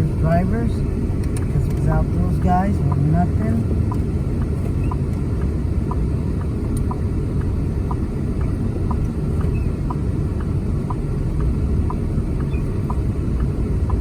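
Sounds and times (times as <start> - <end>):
car road noise rumble: 0.0 - 14.0
indicator ticking: 0.0 - 14.0.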